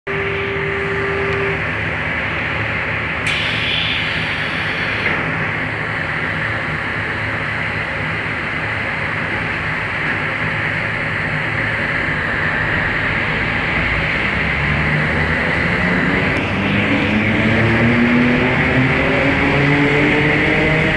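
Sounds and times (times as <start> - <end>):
electric train low hum: 0.1 - 20.9
high hiss: 3.3 - 5.1.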